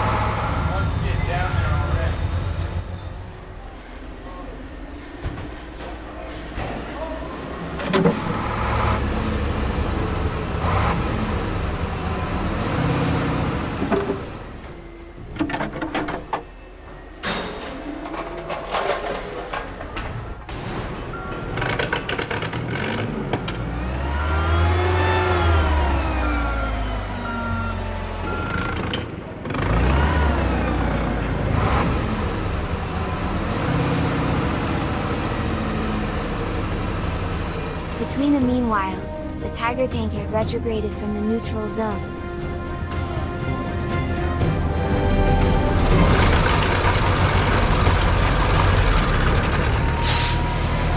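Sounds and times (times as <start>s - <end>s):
vehicle engine running: 0.0s - 3.5s, 7.6s - 14.6s, 21.8s - 50.9s
music: 37.4s - 49.2s.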